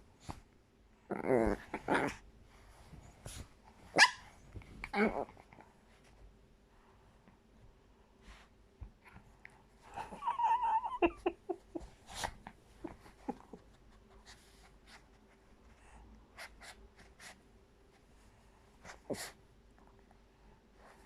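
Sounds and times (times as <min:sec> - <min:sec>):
dog whining: 0:09.9 - 0:11.4.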